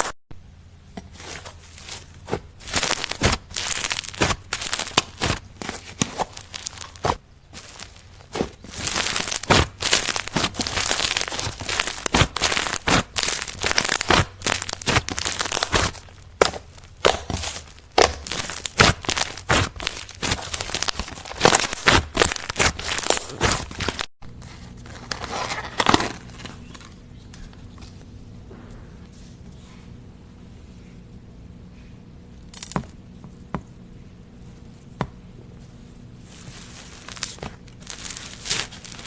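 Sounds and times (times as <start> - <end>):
slime crackling and popping: 2.6 - 8.0, 8.6 - 24.1, 36.8 - 39.0
slime squishing: 2.6 - 24.1.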